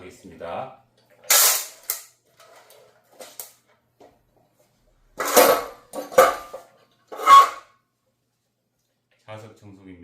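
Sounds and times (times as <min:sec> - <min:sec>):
loose metal bits clattering: 0:05.2 - 0:07.5.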